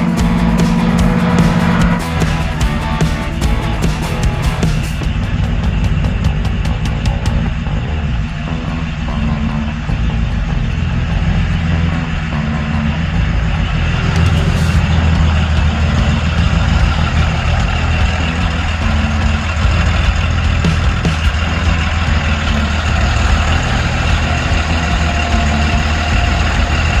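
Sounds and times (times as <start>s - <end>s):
car engine idling: 0.0s - 27.0s.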